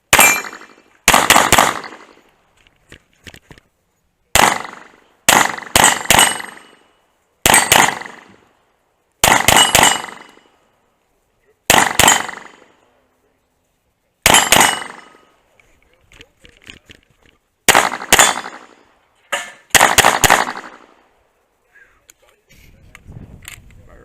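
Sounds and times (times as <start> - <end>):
steel targets ringing: 0.1 - 0.8, 5.8 - 6.9, 9.5 - 10.6
pistol shots: 0.1 - 2.2, 4.4 - 6.8, 7.4 - 8.4, 9.2 - 10.5, 11.7 - 12.7, 14.2 - 15.2, 17.7 - 18.8, 19.7 - 20.9.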